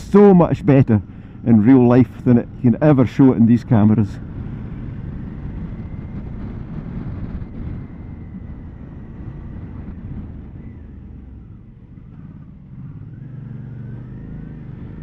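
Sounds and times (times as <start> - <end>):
motorcycle engine running: 0.0 - 15.0
wind noise on microphone: 4.1 - 12.0.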